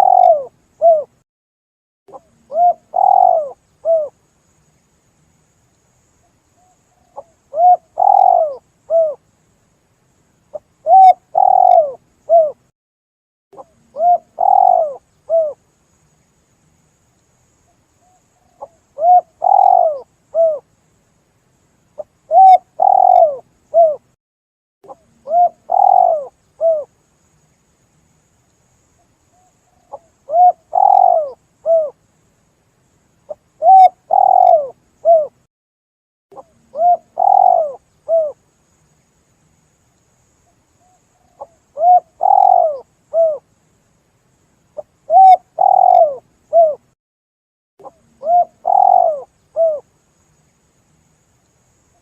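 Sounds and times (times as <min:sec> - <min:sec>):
dove cooing: 0:00.0 - 0:01.2, 0:02.1 - 0:04.2, 0:06.6 - 0:09.2, 0:10.5 - 0:12.6, 0:13.6 - 0:15.6, 0:18.4 - 0:20.7, 0:22.3 - 0:24.0, 0:24.9 - 0:26.9, 0:29.4 - 0:32.0, 0:33.3 - 0:35.4, 0:36.4 - 0:38.4, 0:41.2 - 0:43.4, 0:44.8 - 0:46.9, 0:47.8 - 0:49.9.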